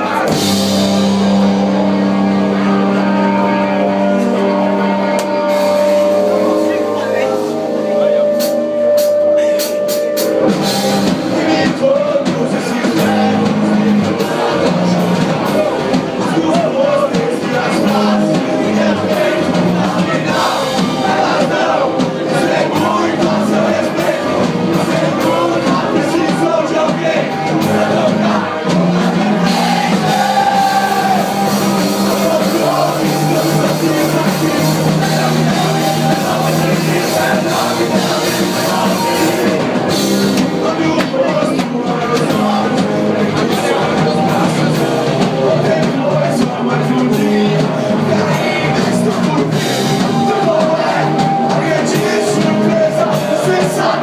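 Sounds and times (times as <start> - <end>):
rock band playing live: 0.0 - 54.0
shouted vocals: 10.8 - 54.0.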